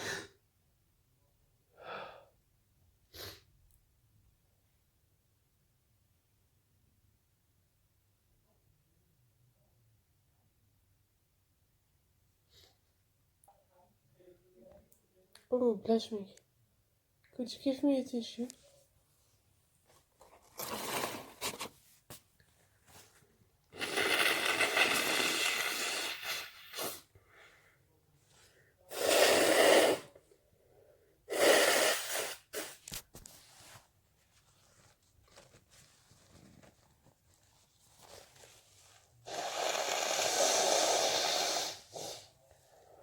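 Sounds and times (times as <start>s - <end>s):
person blowing nose into tissue: 0.0s - 0.3s, 3.1s - 3.4s, 23.8s - 27.1s, 28.9s - 30.2s, 31.3s - 33.0s, 38.0s - 42.4s.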